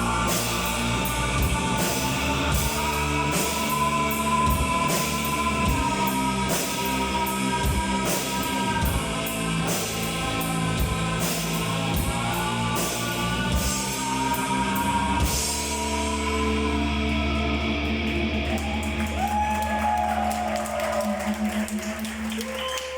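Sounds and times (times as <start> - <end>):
drum kit with cymbal crashes: 0.0 - 16.5
bass guitar: 0.0 - 22.9.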